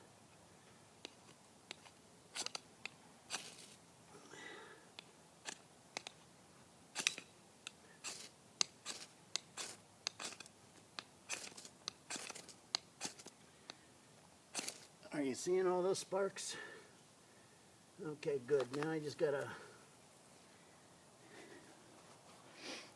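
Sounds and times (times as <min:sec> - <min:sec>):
knife scraping ferro rod: 0:01.0 - 0:02.6, 0:03.3 - 0:03.8, 0:07.0 - 0:07.3, 0:08.0 - 0:13.3, 0:14.5 - 0:14.9.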